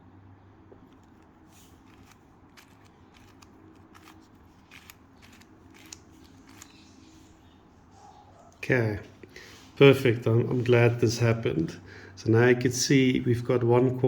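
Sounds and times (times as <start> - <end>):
puzzle cube clicking: 1.8 - 6.9.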